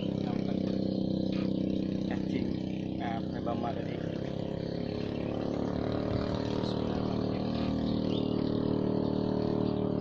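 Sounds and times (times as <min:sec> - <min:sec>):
boat engine running: 0:00.0 - 0:10.0.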